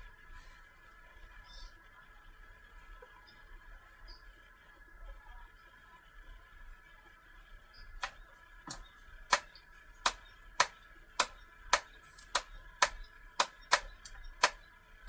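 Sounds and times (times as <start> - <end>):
faint electric whine: 0.0 - 15.0
small electric mechanism clicking: 8.0 - 14.8.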